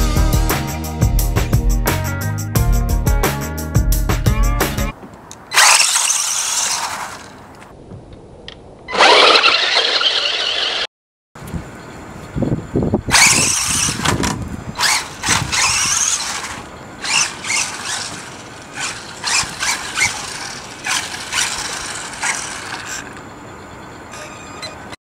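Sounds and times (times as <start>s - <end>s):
electric motor whining: 5.5s - 7.4s, 13.1s - 23.2s.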